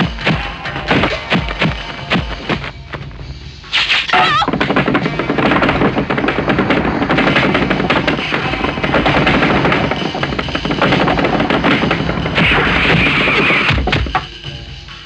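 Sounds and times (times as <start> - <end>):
rapid sharp impacts: 0.0 - 14.4.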